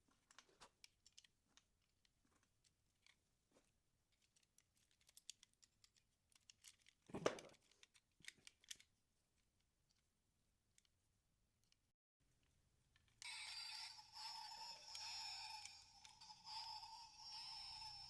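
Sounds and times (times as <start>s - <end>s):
small clicks: 4.2s - 7.0s, 7.6s - 8.9s.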